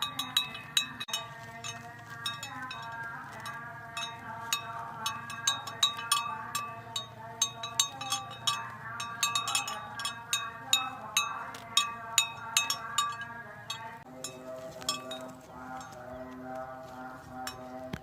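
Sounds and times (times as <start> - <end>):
cowbells clanking: 0.0 - 16.5, 17.2 - 18.0.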